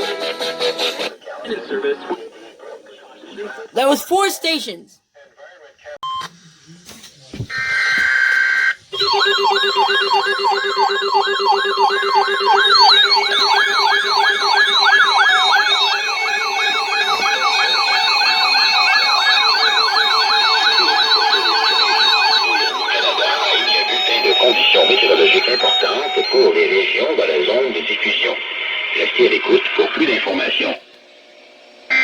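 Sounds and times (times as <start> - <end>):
warbling siren-like alert tone: 9.0 - 26.7.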